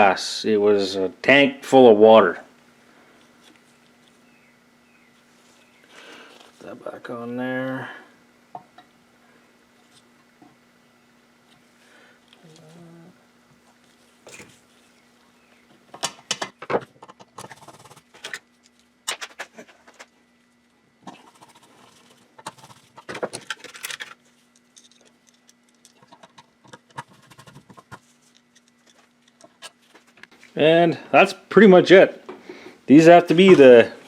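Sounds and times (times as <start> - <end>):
faint steady hum: 0.0 - 34.0
small parts clicking and scraping: 21.1 - 30.4.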